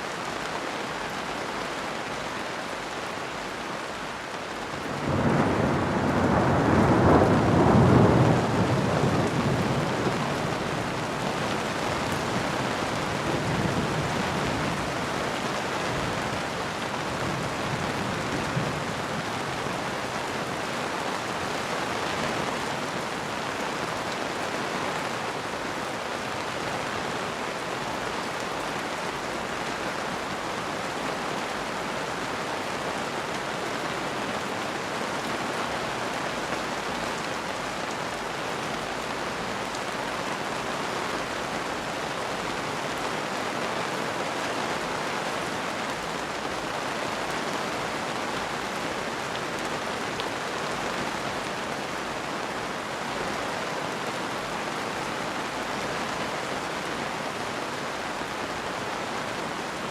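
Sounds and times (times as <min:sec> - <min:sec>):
heavy rain: 0:00.0 - 0:59.9
thunder rumbling: 0:04.9 - 0:20.4.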